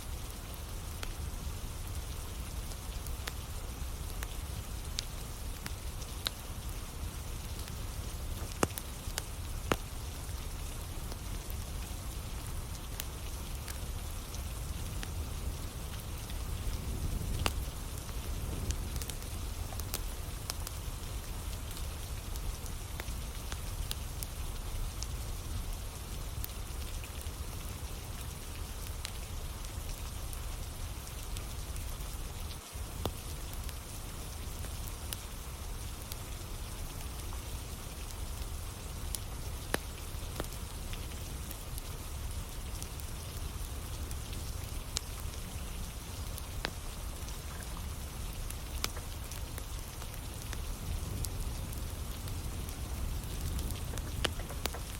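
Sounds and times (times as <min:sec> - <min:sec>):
campfire crackling and popping: 0:00.0 - 0:54.9
steady rain falling: 0:00.0 - 0:54.9.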